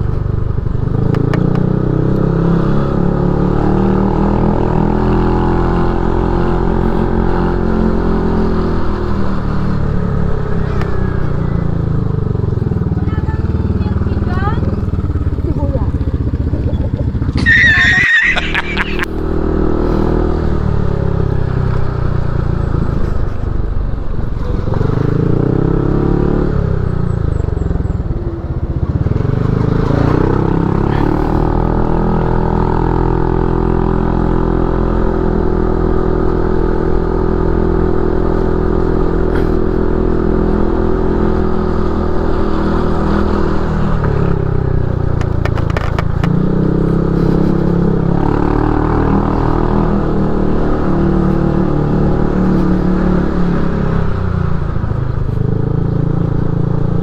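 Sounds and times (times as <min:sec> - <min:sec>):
motorcycle engine running: 0:00.0 - 0:57.0
brief shrill sound: 0:17.4 - 0:19.0.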